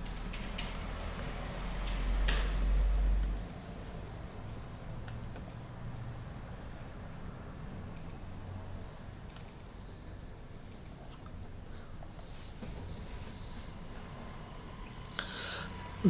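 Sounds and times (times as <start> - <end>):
faint light clicks: 3.2 - 3.6, 7.9 - 8.3, 9.3 - 9.8, 10.7 - 11.8.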